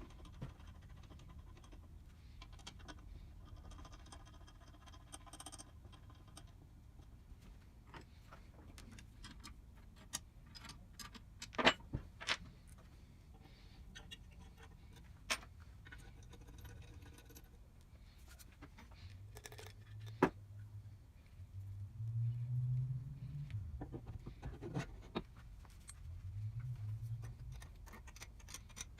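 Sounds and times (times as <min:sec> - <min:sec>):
metal parts and tools clicking: 0:08.8 - 0:12.5, 0:13.9 - 0:17.6, 0:23.8 - 0:28.9.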